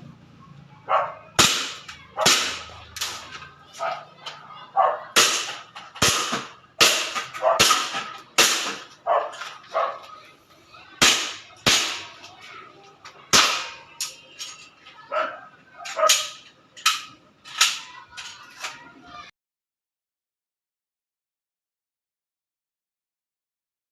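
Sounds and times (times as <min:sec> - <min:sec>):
airsoft gun shots: 0:01.4 - 0:03.2, 0:05.2 - 0:08.9.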